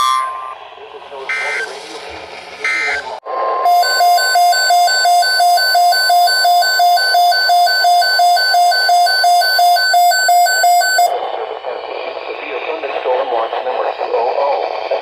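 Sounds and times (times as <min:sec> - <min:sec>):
shrill alarm beeps: 0:00.0 - 0:00.6, 0:01.3 - 0:01.7, 0:02.7 - 0:03.0, 0:03.6 - 0:11.2
steady alarm tone: 0:00.0 - 0:00.7, 0:01.3 - 0:01.7, 0:02.6 - 0:11.2.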